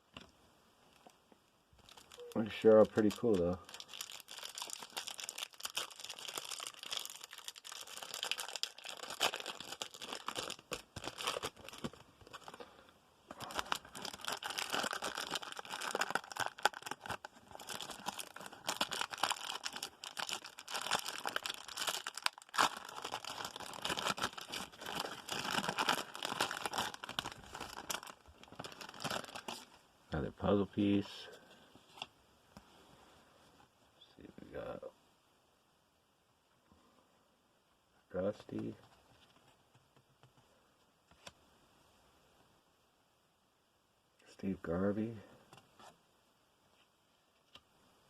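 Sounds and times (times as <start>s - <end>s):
wrapper crinkling and tearing: 1.8s - 12.7s, 13.3s - 29.7s.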